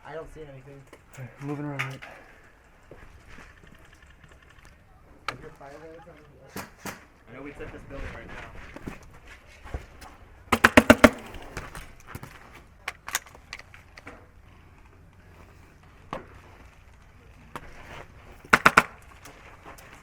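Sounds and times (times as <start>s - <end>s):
airsoft gun rapid bursts: 10.5s - 11.5s, 18.5s - 19.0s
airsoft gun single cracks: 18.5s - 18.9s.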